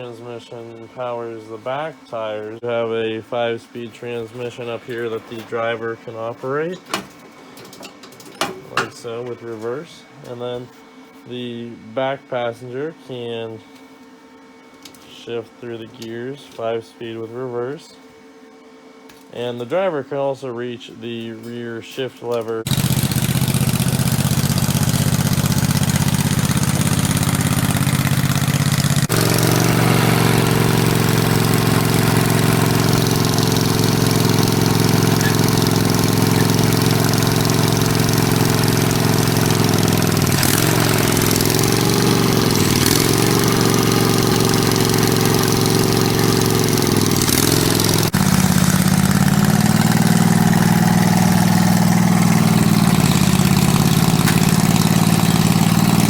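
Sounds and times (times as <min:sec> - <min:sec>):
riding mower engine running: 0:04.2 - 0:10.4, 0:22.6 - 0:56.0.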